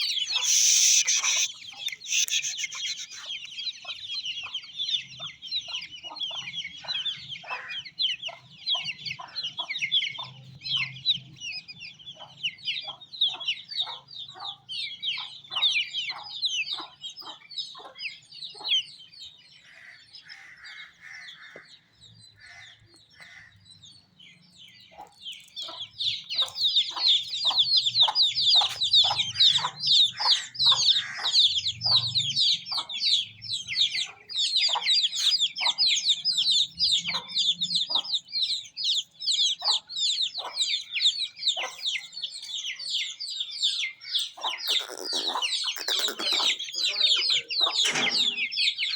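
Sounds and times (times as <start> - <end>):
loud low bird call: 0.0 - 3.3
chicks peeping: 0.0 - 48.9
low clucks: 0.1 - 3.4, 44.5 - 48.5.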